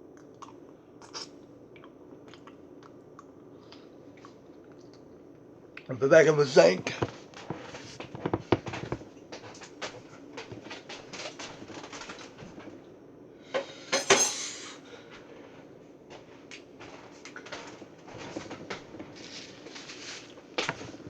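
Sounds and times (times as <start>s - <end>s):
dishes and utensils clinking: 13.6s - 14.7s.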